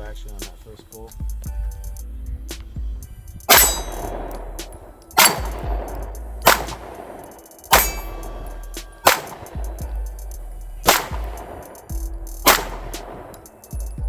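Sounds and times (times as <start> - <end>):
pistol shots: 3.5 - 10.0, 10.9 - 13.6
ringing clang of steel target: 3.5 - 13.8.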